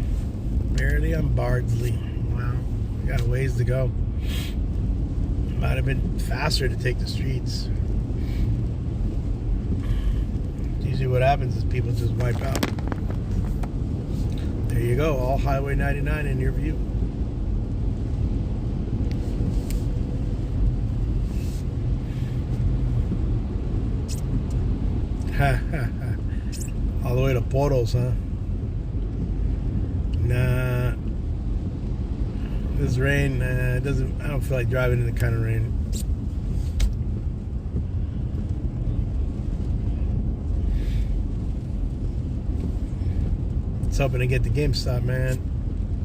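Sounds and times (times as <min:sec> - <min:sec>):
car engine and tyres rumbling: 0:00.0 - 0:46.0.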